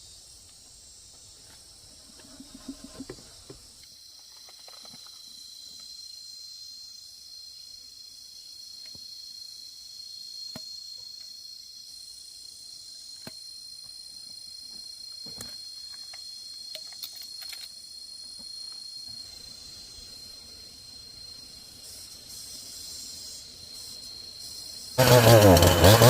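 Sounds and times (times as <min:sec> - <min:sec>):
insects shrilling: 0:00.0 - 0:05.7, 0:15.3 - 0:26.0.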